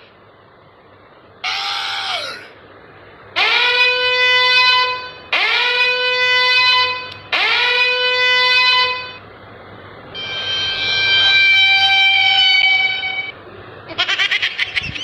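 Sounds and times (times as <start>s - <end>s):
horn-like notes bending up: 10.2s - 13.4s.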